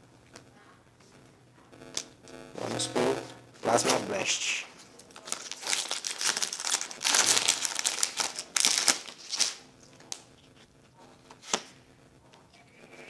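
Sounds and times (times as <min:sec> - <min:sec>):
foil wrapper crinkling and tearing: 0:03.6 - 0:10.6.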